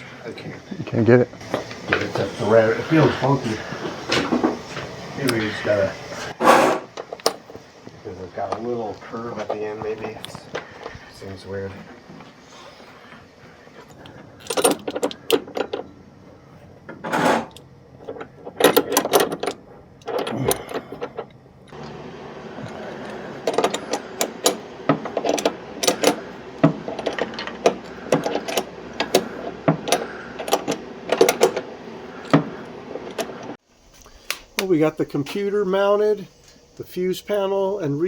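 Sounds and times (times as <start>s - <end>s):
background hiss: 0.0s - 15.4s, 33.5s - 38.0s
metal tools clinking: 13.8s - 16.0s, 22.6s - 31.6s.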